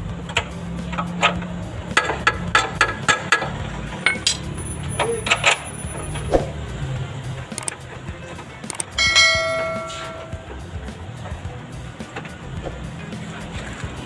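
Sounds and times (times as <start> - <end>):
metal tools clinking on metal: 2.1 - 6.3.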